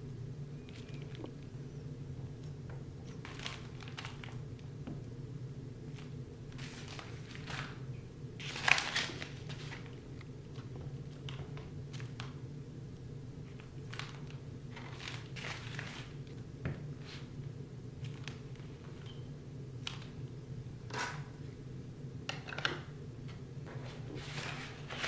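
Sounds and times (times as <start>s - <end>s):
low room hum: 0.0s - 25.0s
packaging rustling and crinkling: 3.1s - 4.7s, 5.9s - 7.8s, 8.4s - 12.4s, 13.4s - 16.4s.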